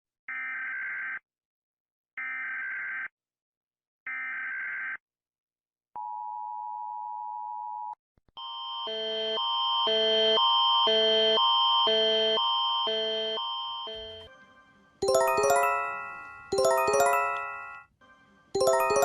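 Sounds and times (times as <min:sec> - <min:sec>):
alternating electronic alarm: 0:08.4 - 0:14.3.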